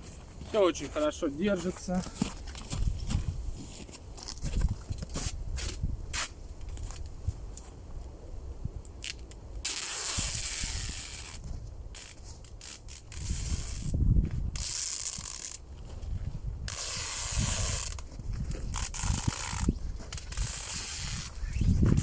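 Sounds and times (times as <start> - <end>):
adhesive tape pulled off roll: 9.0 - 15.6, 16.7 - 22.0.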